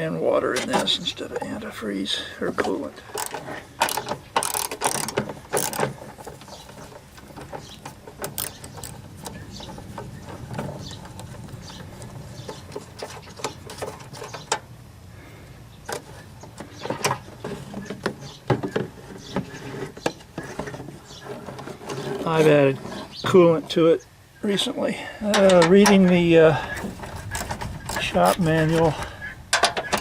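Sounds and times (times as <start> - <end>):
plastic parts being handled: 2.4 - 14.6
hand tools clicking and knocking: 2.6 - 14.7, 15.9 - 23.0, 25.2 - 30.0.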